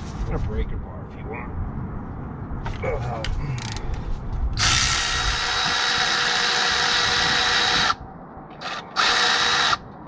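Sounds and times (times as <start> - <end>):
power ratchet whining: 4.6 - 8.0, 8.6 - 9.8.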